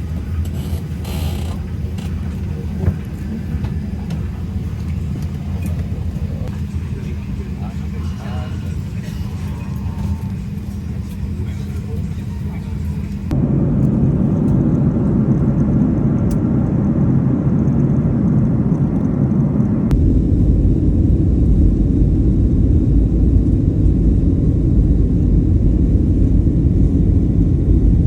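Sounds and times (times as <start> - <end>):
loud low rumble: 13.2 - 28.0.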